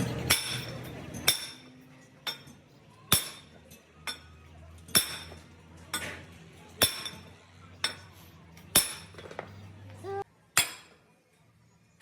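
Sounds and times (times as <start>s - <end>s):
hammer striking metal: 0.3s - 1.7s, 2.3s - 4.3s, 4.9s - 5.4s, 6.8s - 8.1s, 8.7s - 9.4s, 10.6s - 11.0s.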